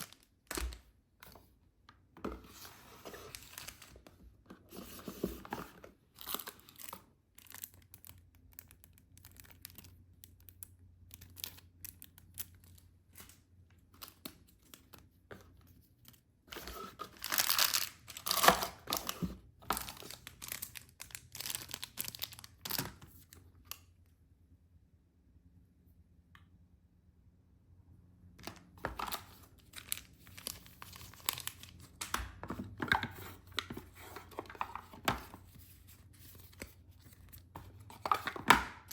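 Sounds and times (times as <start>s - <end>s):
packaging being torn and crinkled: 17.1s - 23.0s, 28.5s - 32.2s.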